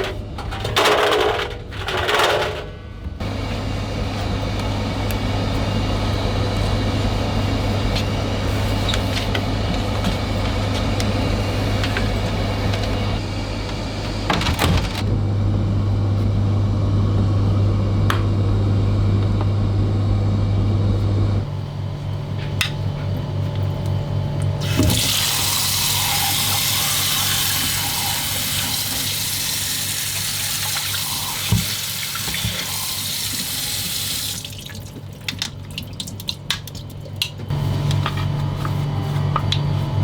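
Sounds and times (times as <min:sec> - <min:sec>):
low machine hum: 0:00.0 - 0:40.0
water running hard: 0:24.3 - 0:37.0.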